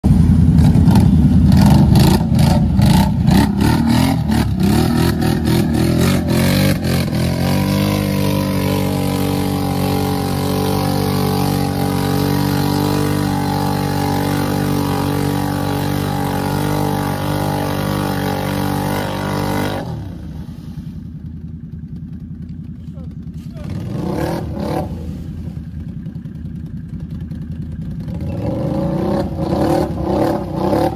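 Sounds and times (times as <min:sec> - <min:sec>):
atv engine revving: 0:00.1 - 0:30.9.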